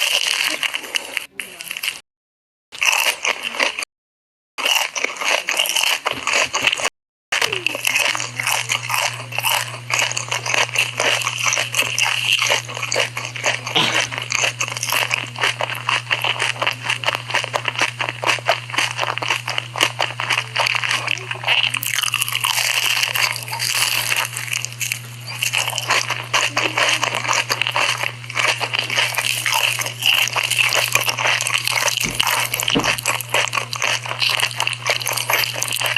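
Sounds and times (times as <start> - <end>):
crunching chews: 0.0 - 2.0, 2.8 - 3.9, 4.6 - 35.9
steady low hum: 7.4 - 35.9.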